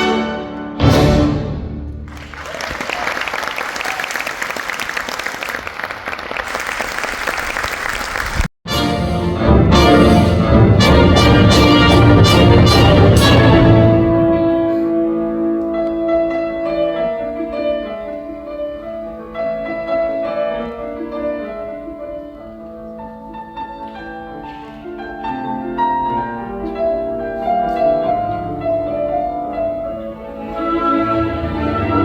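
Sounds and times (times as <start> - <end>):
symphony orchestra playing: 0.0 - 2.3, 8.7 - 23.5, 24.1 - 32.0.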